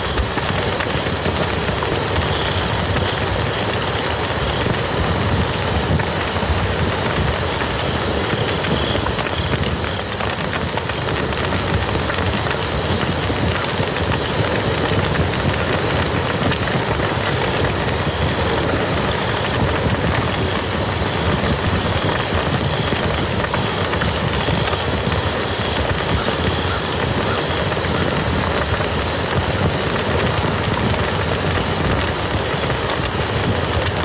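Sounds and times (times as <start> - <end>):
river rushing: 0.0 - 26.9
campfire crackling and popping: 0.0 - 34.0.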